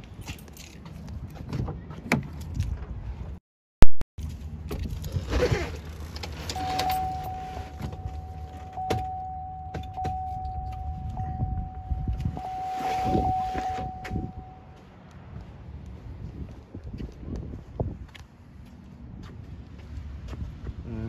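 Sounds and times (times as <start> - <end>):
high-pitched electronic tone: 6.6 - 14.8.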